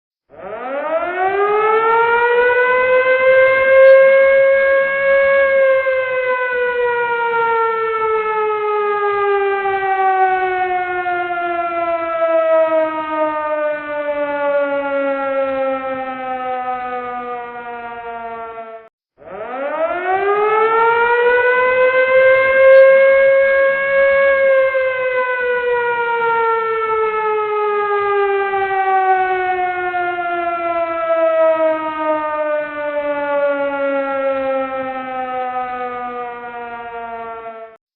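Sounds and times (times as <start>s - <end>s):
emergency warning siren wailing: 0.3s - 37.8s.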